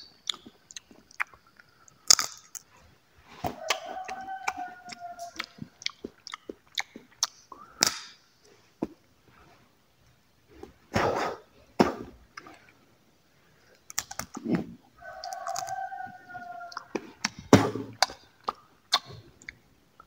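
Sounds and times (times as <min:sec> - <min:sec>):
dry fruit cracking and chewing: 0:00.2 - 0:02.7, 0:03.4 - 0:08.2, 0:13.7 - 0:15.8, 0:18.0 - 0:19.6.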